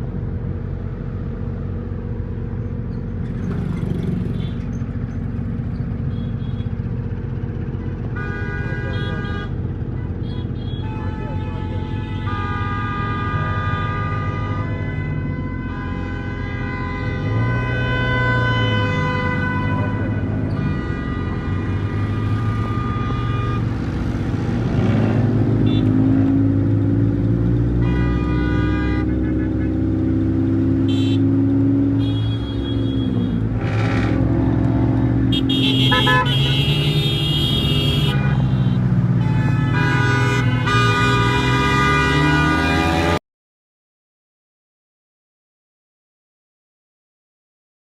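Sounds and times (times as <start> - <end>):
car horns honking: 3.2 - 43.2
car engine revving: 17.1 - 43.2.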